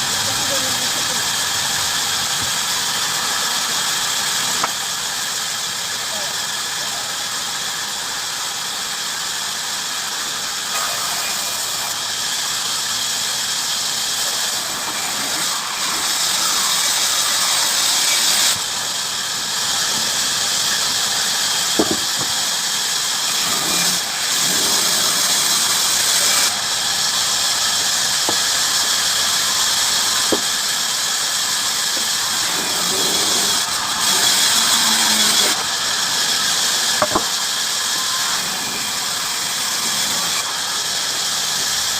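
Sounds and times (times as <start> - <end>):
bandsaw cutting wood: 0.0 - 7.0, 9.7 - 41.9
sharp knocks: 21.8 - 22.3, 37.0 - 37.3.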